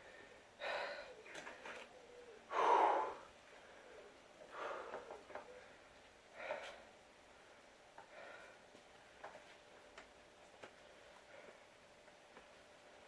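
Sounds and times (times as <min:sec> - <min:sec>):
person breathing hard: 0:00.0 - 0:01.8, 0:02.4 - 0:08.8.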